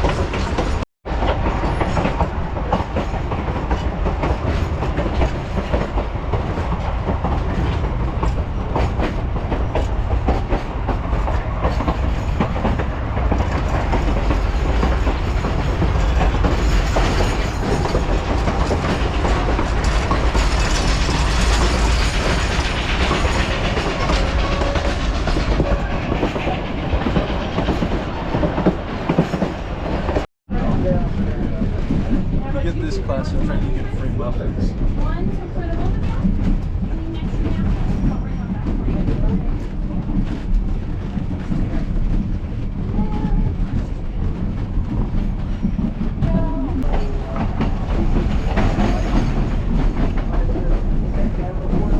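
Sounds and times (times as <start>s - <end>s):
wheels clattering over rail joints: 0.0s - 30.3s
train car rumbling: 0.0s - 51.9s.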